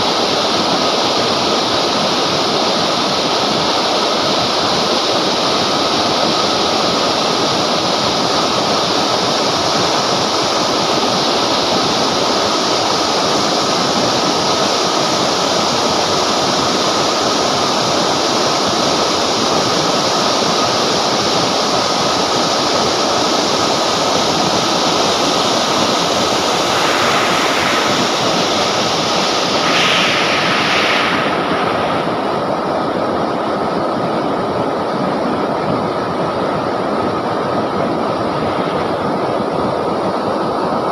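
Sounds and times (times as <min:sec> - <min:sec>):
river water rushing over rocks: 0:22.0 - 0:33.5.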